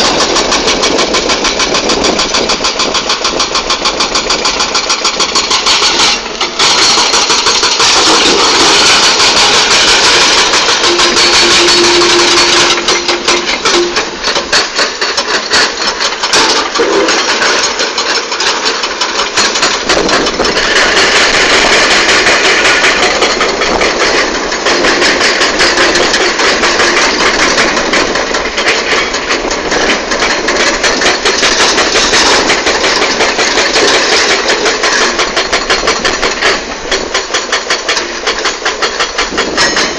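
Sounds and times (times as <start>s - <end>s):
excavator diesel engine clattering: 0.0s - 39.9s
steady whine: 5.9s - 16.1s.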